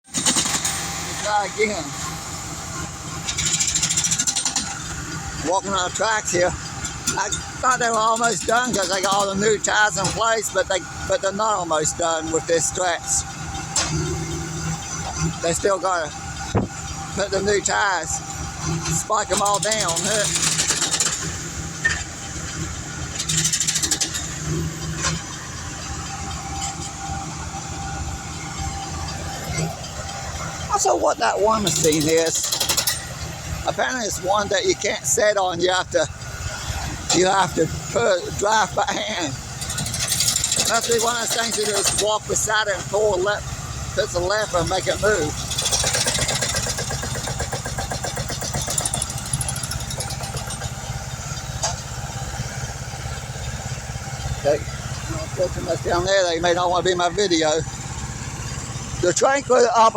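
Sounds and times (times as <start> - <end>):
diesel engines running: 0.0 - 59.9
rapid metallic clattering: 18.6 - 22.3, 29.0 - 33.4.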